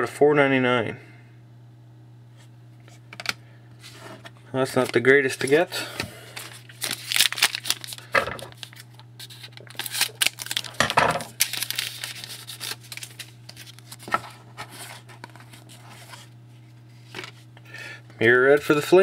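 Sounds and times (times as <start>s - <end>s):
cards rustling: 4.7s - 17.5s
foil wrapper tearing and crinkling: 6.4s - 16.1s.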